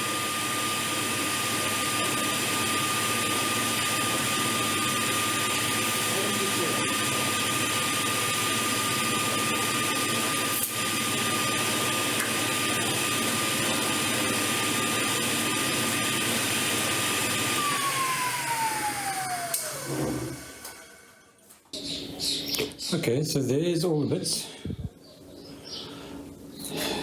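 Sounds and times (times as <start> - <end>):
power saw whining: 1.1 - 21.3.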